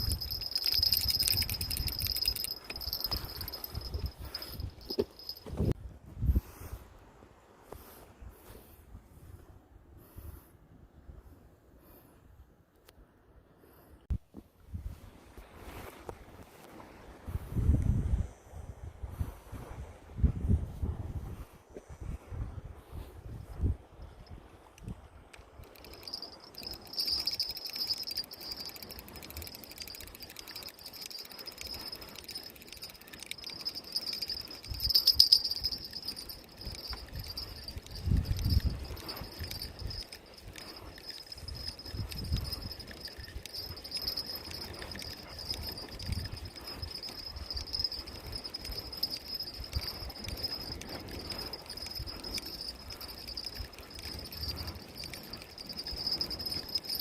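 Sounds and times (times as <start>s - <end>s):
crickets trilling: 0.0s - 5.7s, 25.6s - 57.0s
night insects chirring: 0.0s - 5.7s, 25.6s - 57.0s.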